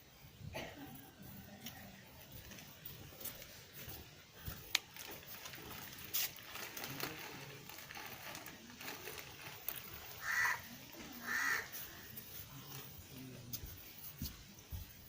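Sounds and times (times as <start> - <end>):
crow cawing: 10.2 - 12.1.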